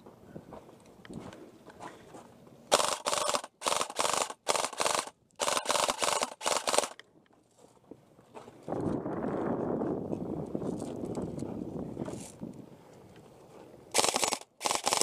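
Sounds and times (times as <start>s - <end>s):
airsoft rifle full-auto bursts: 2.7s - 7.0s, 13.9s - 15.0s.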